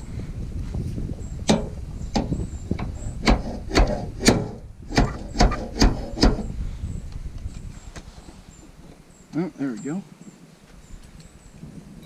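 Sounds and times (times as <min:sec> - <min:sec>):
metal knocks with squeaks: 0:01.4 - 0:06.5.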